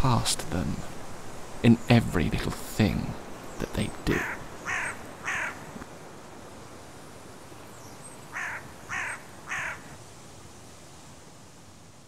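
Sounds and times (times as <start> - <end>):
faint background noise: 0.0 - 12.0
crow cawing: 4.2 - 5.8, 8.3 - 10.0.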